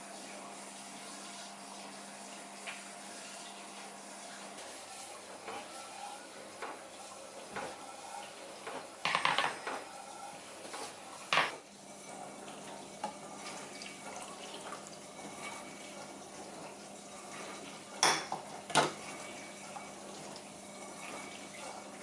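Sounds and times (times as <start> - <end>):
dishes and cutlery clinking: 8.6 - 10.0, 10.6 - 21.8
dishes clattering: 8.6 - 10.0, 10.6 - 21.8.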